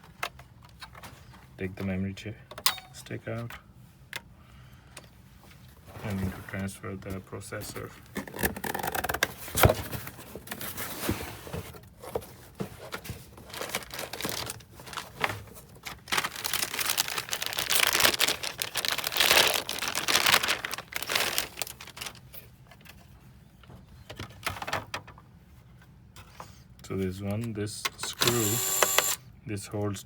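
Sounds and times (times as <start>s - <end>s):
hands rustling and crinkling: 10.5s - 23.2s.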